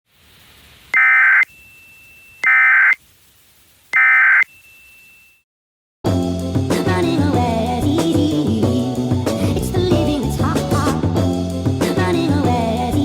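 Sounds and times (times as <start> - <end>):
buzzy digital data tones: 0.9 - 3.0, 4.0 - 5.4
music: 6.0 - 13.0.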